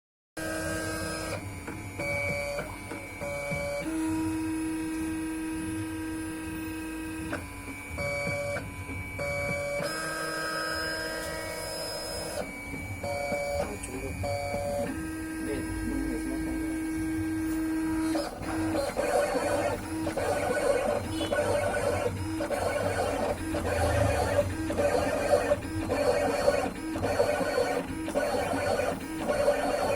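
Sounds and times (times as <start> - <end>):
stepper motors whining: 10.7 - 29.9.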